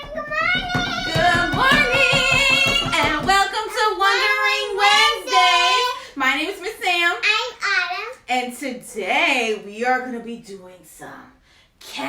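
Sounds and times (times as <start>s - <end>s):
fast tapping beat: 0.0s - 3.6s.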